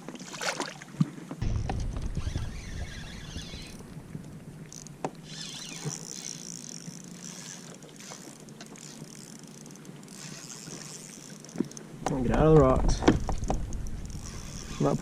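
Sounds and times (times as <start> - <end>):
water sloshing around kayak: 0.0 - 15.0
small clicks and knocks: 7.7 - 14.5.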